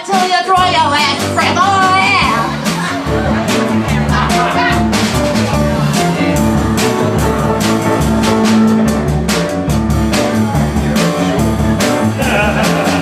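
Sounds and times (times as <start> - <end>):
rock band playing: 0.0 - 13.0
person singing: 12.1 - 13.0.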